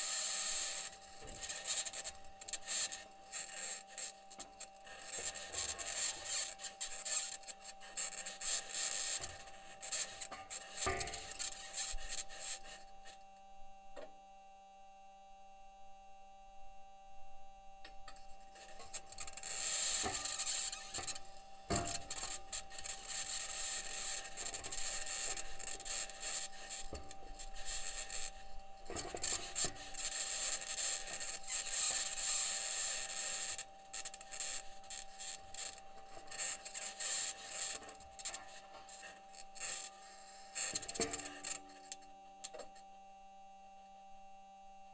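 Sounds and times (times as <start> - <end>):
steady hum: 0.0 - 44.9
short squeaks: 18.8 - 21.2.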